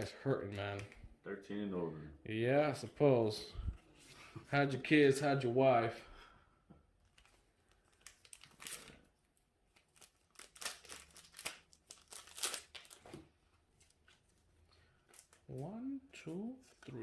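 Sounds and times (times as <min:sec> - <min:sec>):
foil wrapper crinkling and tearing: 0:07.2 - 0:09.0, 0:09.7 - 0:13.2.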